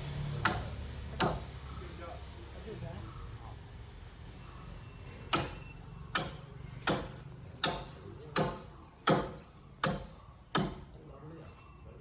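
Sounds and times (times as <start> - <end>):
axe chopping tree trunk: 0.4 - 1.5, 5.3 - 5.6, 6.2 - 10.9.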